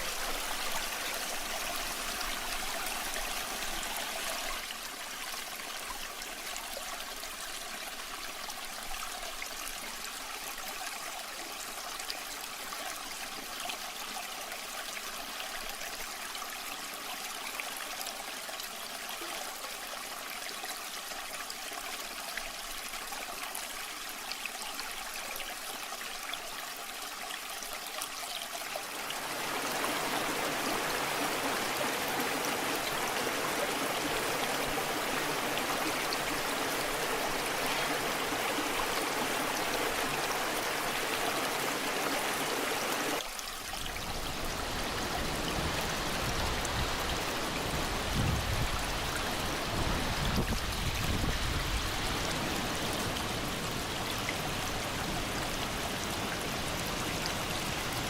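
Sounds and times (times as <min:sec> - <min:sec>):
waterfall running: 0:00.0 - 0:04.7, 0:28.8 - 0:58.0.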